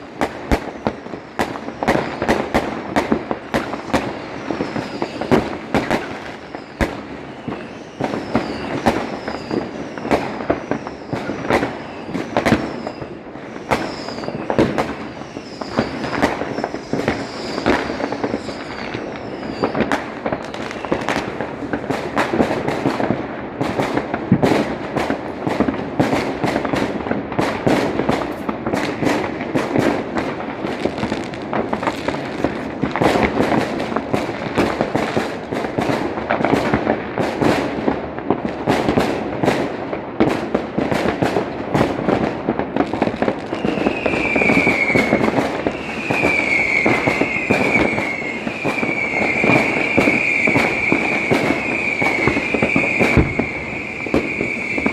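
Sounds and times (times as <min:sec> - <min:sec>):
fireworks bangs and crackles: 0:00.0 - 0:54.9
short falling whistles: 0:07.3 - 0:10.0, 0:13.7 - 0:14.5.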